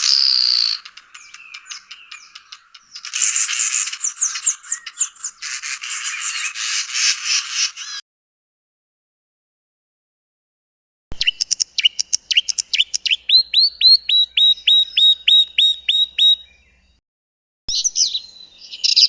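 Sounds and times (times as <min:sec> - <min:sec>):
bird song chattering and whistling: 0:00.0 - 0:06.9, 0:11.2 - 0:17.0, 0:17.7 - 0:19.0.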